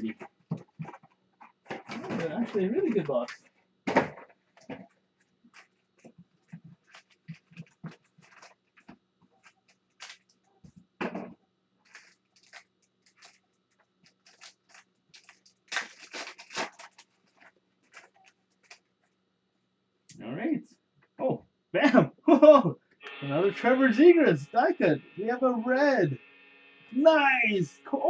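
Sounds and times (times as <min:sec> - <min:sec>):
foil wrappers crinkling: 0:04.5 - 0:10.4, 0:11.8 - 0:19.1.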